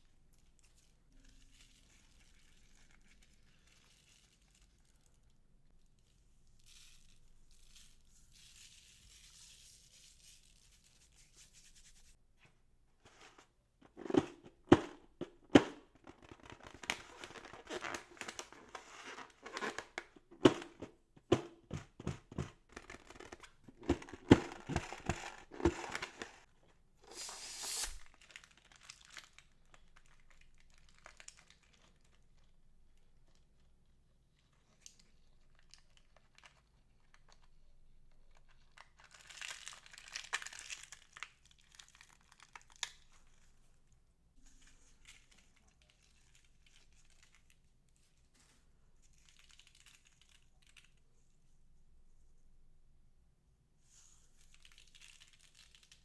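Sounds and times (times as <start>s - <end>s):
short hiss: 27.0s - 28.1s.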